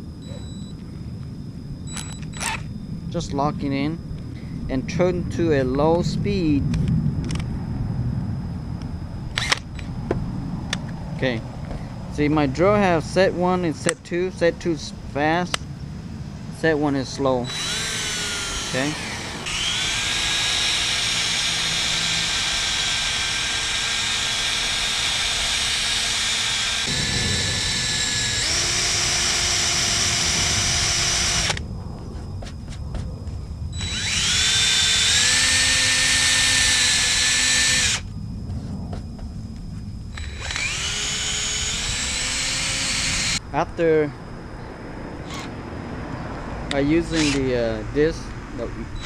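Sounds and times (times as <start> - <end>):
drill spinning eraser wheel: 17.4 - 27.0, 27.6 - 31.6, 33.8 - 38.0, 40.1 - 43.4, 47.2 - 47.4.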